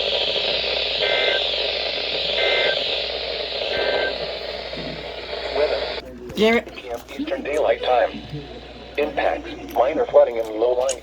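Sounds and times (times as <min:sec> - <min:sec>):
static hiss: 0:00.0 - 0:06.0.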